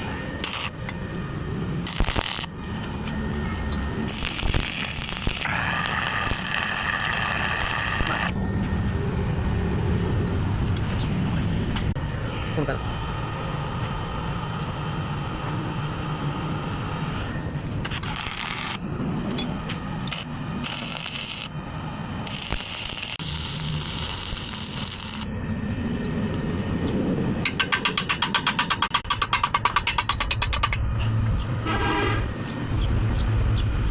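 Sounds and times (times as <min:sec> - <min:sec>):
welding arc crackling and hissing: 0:00.4 - 0:01.2, 0:01.8 - 0:02.6, 0:03.2 - 0:08.4, 0:17.9 - 0:18.8, 0:19.7 - 0:21.6, 0:22.2 - 0:25.3.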